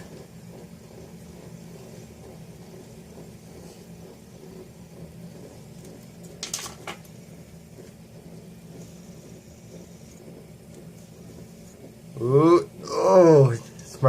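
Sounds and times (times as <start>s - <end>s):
fidget spinners whirring: 0.0s - 14.0s.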